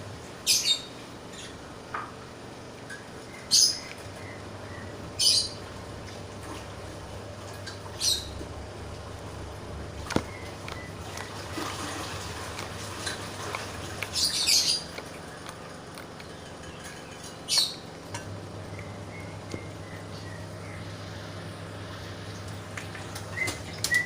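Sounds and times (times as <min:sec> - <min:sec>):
steady low hum: 0:00.0 - 0:24.0
slime squelching: 0:09.8 - 0:16.4.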